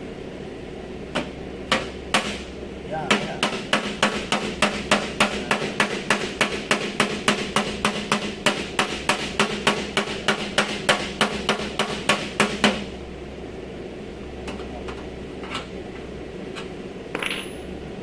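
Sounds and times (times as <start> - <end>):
hammer striking sheet metal: 1.2 - 2.4, 3.1 - 12.9.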